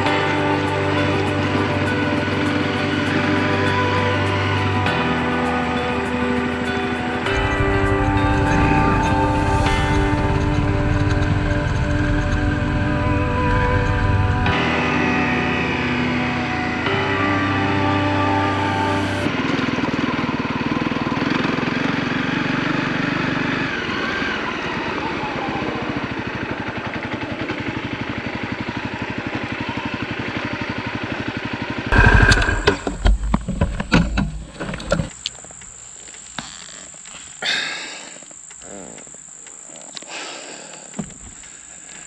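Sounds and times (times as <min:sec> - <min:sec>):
insects chirping: 0:00.0 - 0:10.5, 0:31.9 - 0:42.0
motorcycle engine running: 0:19.7 - 0:34.6
loud uneven noise bursts: 0:31.9 - 0:35.1.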